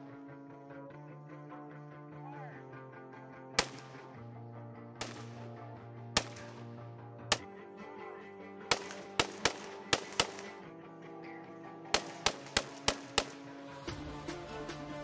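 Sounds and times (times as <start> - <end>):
background music: 0.0 - 15.0
gunshots: 3.6 - 4.2, 5.0 - 7.5, 8.7 - 10.7, 12.0 - 13.8.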